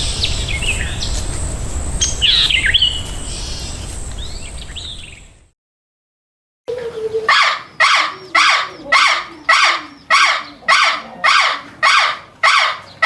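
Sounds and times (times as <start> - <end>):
animal giving harsh calls: 7.2 - 13.0.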